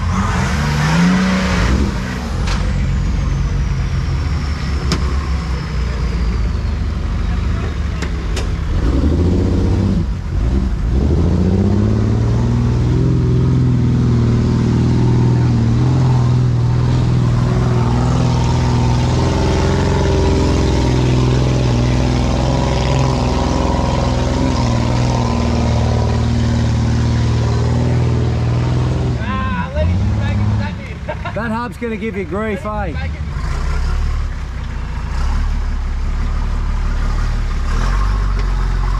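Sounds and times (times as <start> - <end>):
engine revving hard: 0.0 - 3.3.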